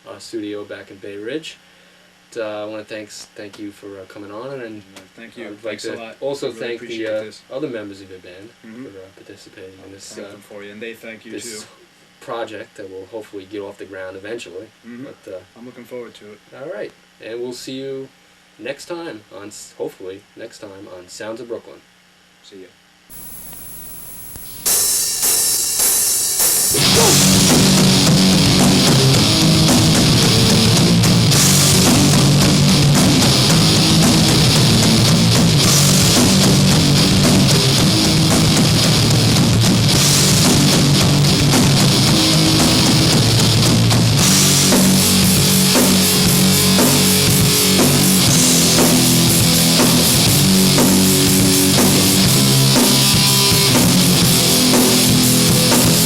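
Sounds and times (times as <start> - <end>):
heavy rock music: 23.1 - 56.0.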